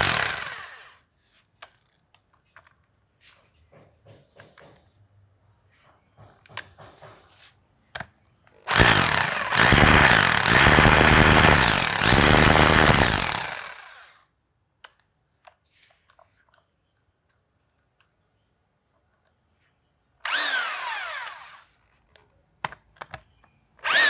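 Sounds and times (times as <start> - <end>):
hammer drill running: 0.0 - 1.0, 8.7 - 14.2, 20.2 - 21.7.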